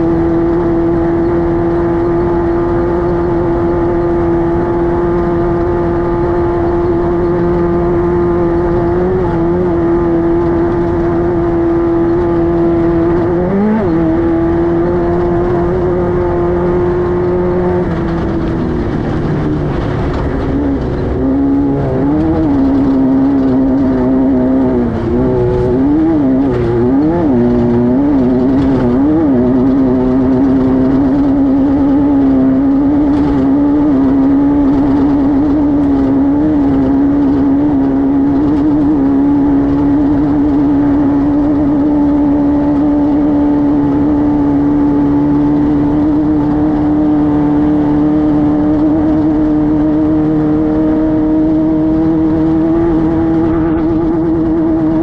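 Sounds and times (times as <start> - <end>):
race car engine revving: 0.0 - 55.0.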